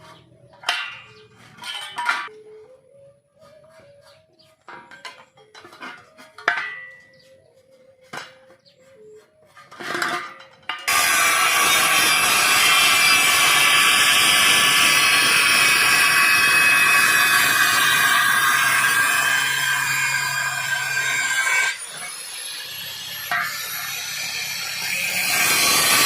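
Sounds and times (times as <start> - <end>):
metal parts clanking: 0.0 - 2.4, 4.7 - 7.1, 9.7 - 11.0, 23.3 - 23.9
ringing metal clang: 0.6 - 2.4, 4.8 - 7.2
cutting tool cutting steel: 10.8 - 26.0.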